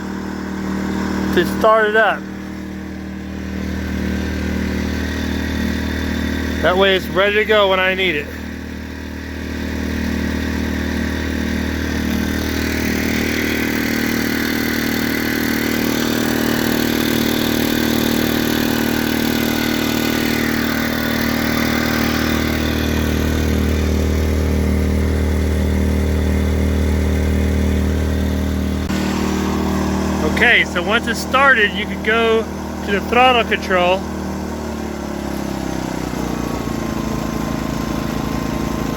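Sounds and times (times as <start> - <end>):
generator engine running: 0.0 - 38.9.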